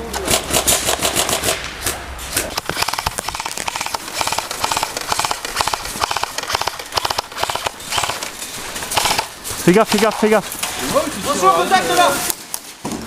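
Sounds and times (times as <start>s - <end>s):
airsoft guns firing bursts: 0.2s - 10.1s.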